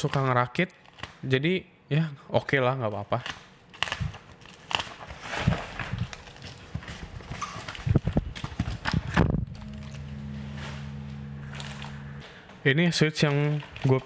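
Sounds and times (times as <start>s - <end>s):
packaging knocks and rustles: 3.2s - 9.4s
steady low hum: 5.0s - 13.8s.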